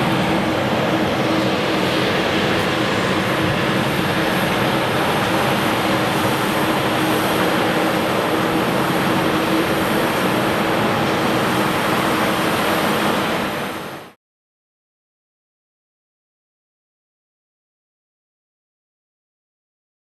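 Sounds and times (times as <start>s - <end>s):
steady engine hum: 0.0s - 14.1s
jet engine rushing: 0.0s - 14.2s.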